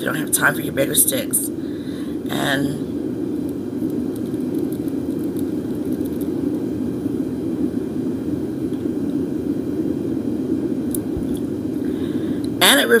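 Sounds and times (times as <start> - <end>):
low droning background noise: 0.0 - 13.0
faint light crackles: 3.3 - 7.8.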